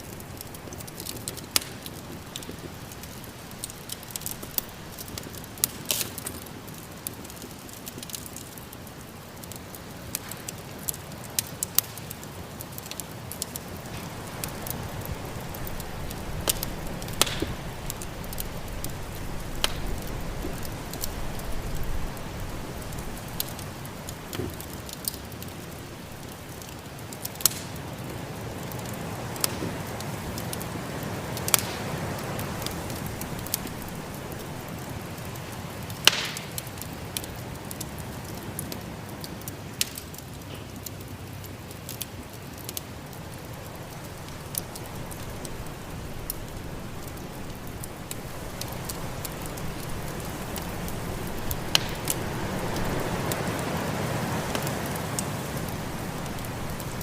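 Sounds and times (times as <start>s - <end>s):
fire popping: 0.0s - 57.0s
wood fire crackling: 0.0s - 57.0s
snowstorm wind: 13.6s - 26.8s, 27.8s - 35.6s, 43.2s - 57.0s.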